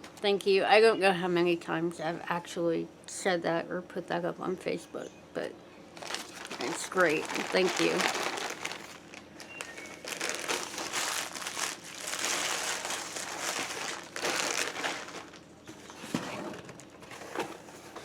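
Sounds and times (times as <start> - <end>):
packaging crinkling and rustling: 6.0 - 18.0.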